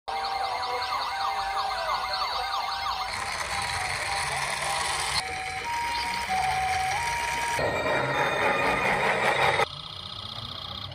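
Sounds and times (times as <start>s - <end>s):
fast yelping toy siren: 0.1s - 10.9s
steady electronic tone: 0.1s - 10.9s
two-tone high-low siren: 0.1s - 10.9s.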